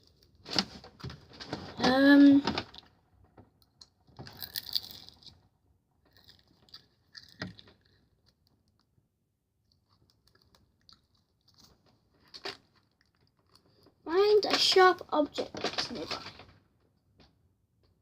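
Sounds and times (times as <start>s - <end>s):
packaging crinkling: 15.3s - 16.6s.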